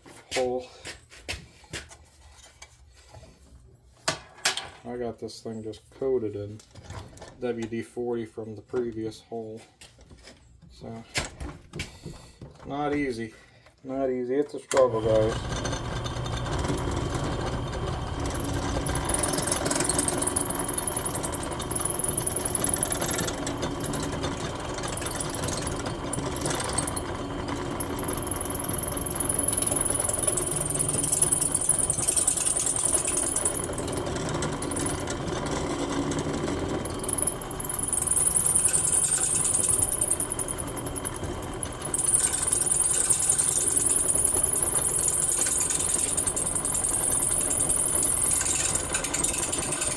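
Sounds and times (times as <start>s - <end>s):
electric drill cutting into metal: 14.7s - 49.9s
drill bit squealing against metal: 16.4s - 35.5s.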